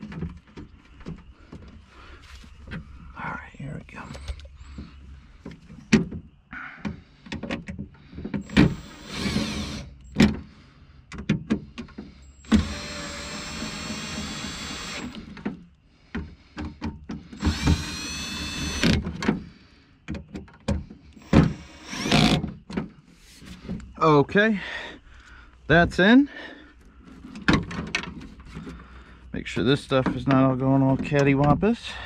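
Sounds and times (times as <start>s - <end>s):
knocks and clicks of window parts: 11.1s - 12.7s, 18.8s - 22.9s.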